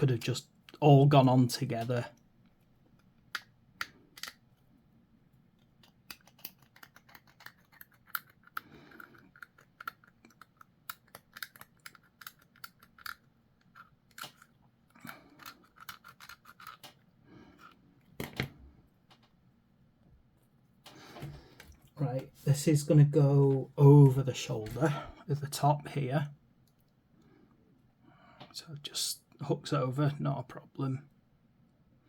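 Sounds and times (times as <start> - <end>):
plastic parts clicking: 2.9 - 4.6, 5.6 - 18.5.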